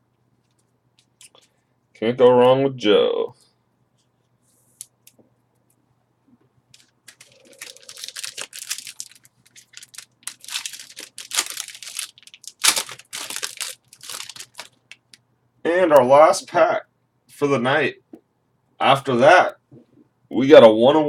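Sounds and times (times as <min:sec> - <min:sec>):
card packaging crinkling and tearing: 0:06.8 - 0:15.2.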